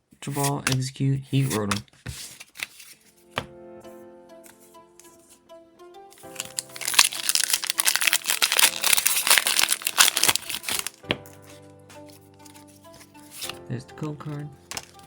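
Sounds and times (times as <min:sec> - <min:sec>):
background music: 0:02.8 - 0:15.0
foil wrapper crinkling: 0:06.2 - 0:13.6, 0:14.7 - 0:15.0.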